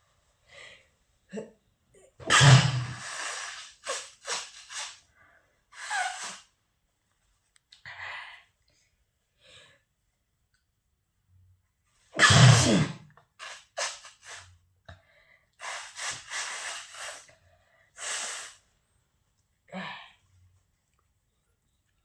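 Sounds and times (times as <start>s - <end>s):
person sneezing: 2.2s - 5.0s, 5.8s - 6.4s, 12.2s - 14.5s, 15.6s - 17.3s
breathy hissing bursts of air: 2.3s - 5.0s, 5.8s - 6.4s, 12.3s - 14.5s, 15.6s - 17.4s, 18.0s - 18.7s.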